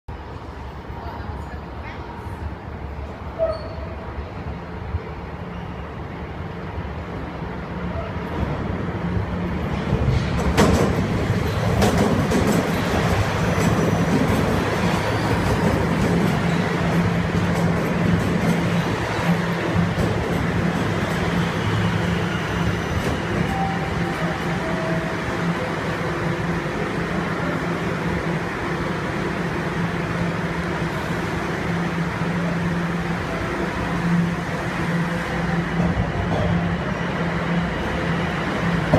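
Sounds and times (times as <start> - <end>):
subway train rumbling: 0.1 - 38.9.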